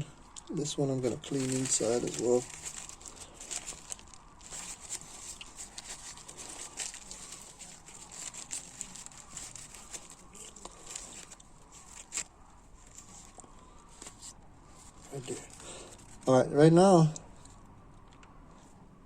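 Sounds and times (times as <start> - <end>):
rustling and scraping: 0.0 - 16.4.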